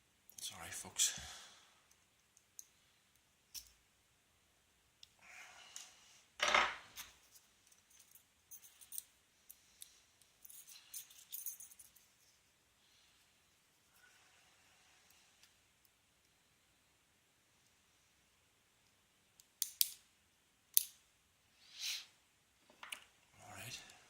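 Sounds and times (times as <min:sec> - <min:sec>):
padlock parts clicking and clinking: 0:01.9 - 0:03.8, 0:07.0 - 0:12.0, 0:19.4 - 0:20.1, 0:20.7 - 0:21.0.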